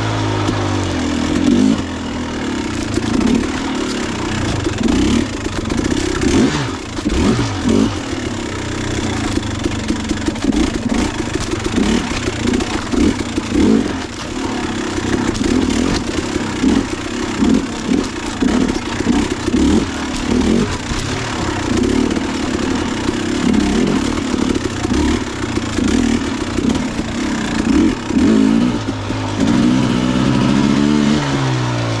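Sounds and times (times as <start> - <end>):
clatter: 0.0 - 32.0
dirt bike engine revving: 0.0 - 32.0.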